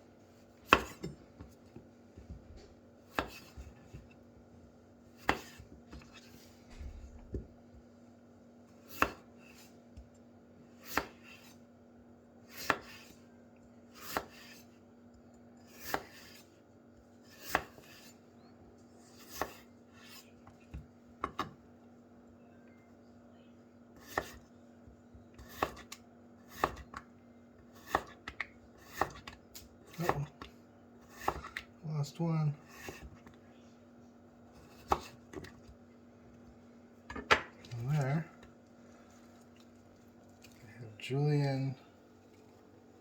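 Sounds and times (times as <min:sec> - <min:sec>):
knife slicing potato: 0:00.6 - 0:01.6, 0:03.0 - 0:04.2, 0:05.1 - 0:06.7, 0:08.7 - 0:11.7, 0:12.4 - 0:14.9, 0:15.6 - 0:16.6, 0:17.2 - 0:18.3, 0:18.9 - 0:21.6, 0:24.0 - 0:24.5, 0:25.3 - 0:27.0, 0:27.6 - 0:31.7, 0:32.5 - 0:33.3, 0:34.5 - 0:35.8.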